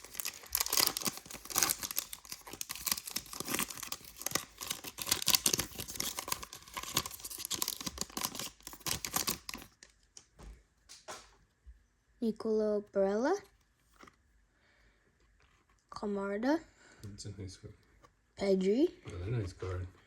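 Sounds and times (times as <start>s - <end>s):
wrapper tearing and crinkling: 0.0s - 9.9s.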